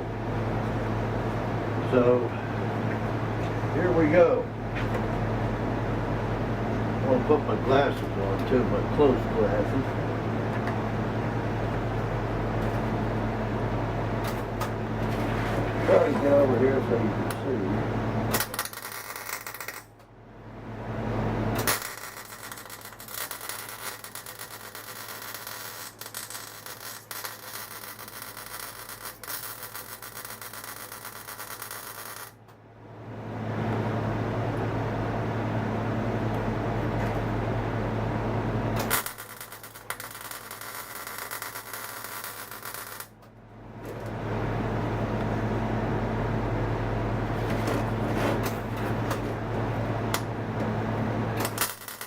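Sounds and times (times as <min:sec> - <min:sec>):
welder steady hum: 0:00.0 - 0:52.0
welding arc crackling: 0:18.2 - 0:20.0, 0:21.3 - 0:32.5, 0:38.6 - 0:43.2, 0:51.3 - 0:52.0.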